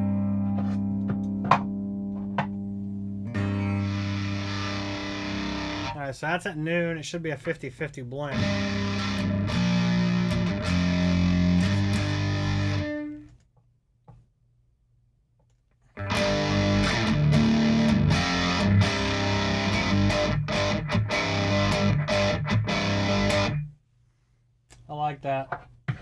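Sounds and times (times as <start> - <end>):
distorted electric guitar riffing: 0.0 - 6.0, 8.3 - 13.2, 16.0 - 23.7.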